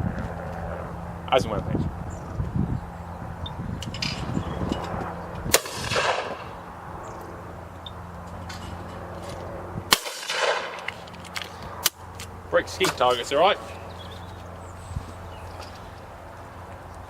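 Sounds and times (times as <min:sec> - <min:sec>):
steady low hum: 0:00.0 - 0:17.0
shotgun shots with echo: 0:05.5 - 0:06.5, 0:09.9 - 0:10.9.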